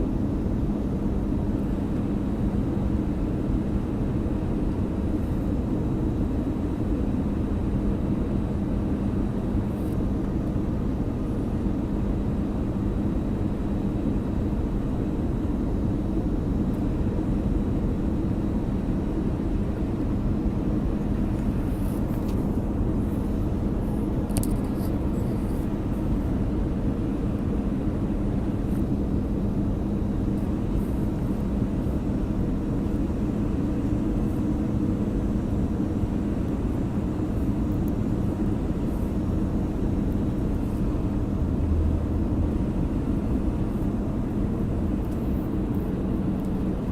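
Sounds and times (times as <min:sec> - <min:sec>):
airliner engine drone in cabin: 0:00.0 - 0:46.9.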